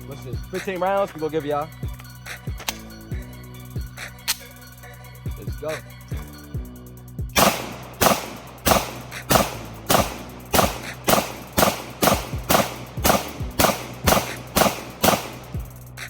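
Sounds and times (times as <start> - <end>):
pistol shots: 7.4 - 15.8.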